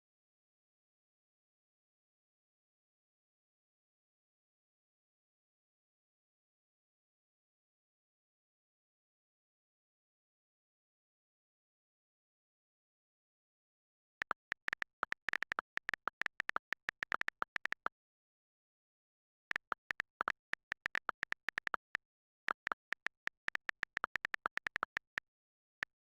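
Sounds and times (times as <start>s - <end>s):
rapid sharp clicks: 14.2s - 17.9s, 19.5s - 26.0s.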